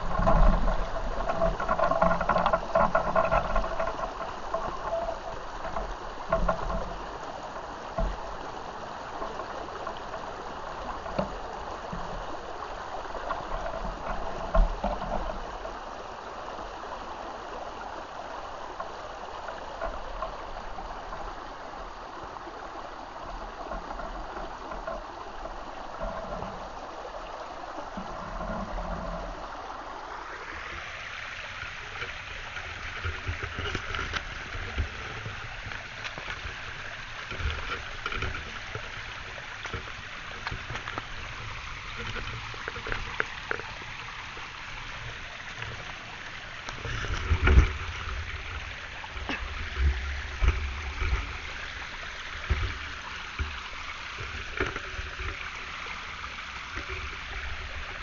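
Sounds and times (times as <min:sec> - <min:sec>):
stream burbling over stones: 0:00.0 - 0:58.0.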